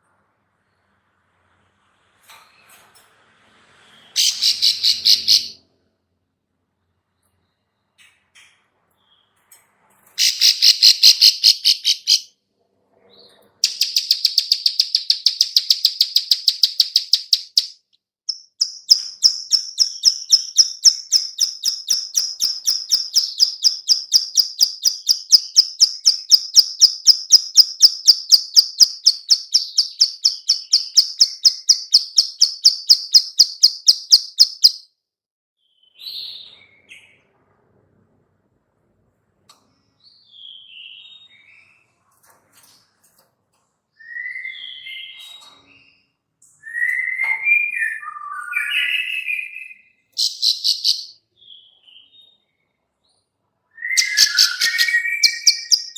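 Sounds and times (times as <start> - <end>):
bird clicking call: 4.2 - 5.6, 13.6 - 34.8.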